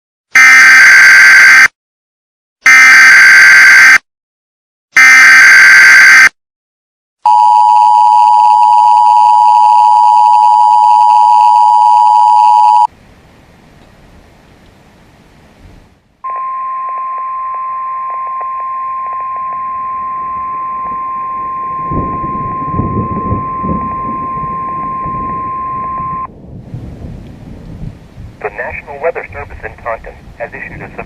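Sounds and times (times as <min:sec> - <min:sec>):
two-tone attention signal: 0:16.3 - 0:26.3.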